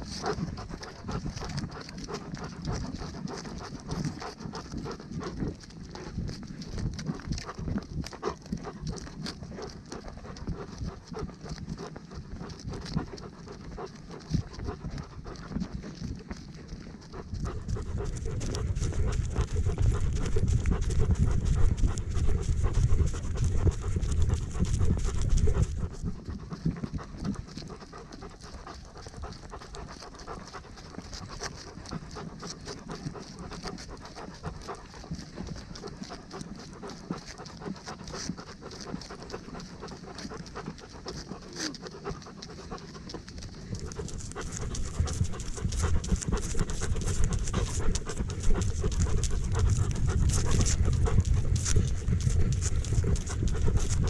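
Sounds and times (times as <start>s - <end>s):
dog panting: 0.0s - 54.0s
low rumble: 17.2s - 28.4s, 43.8s - 54.0s.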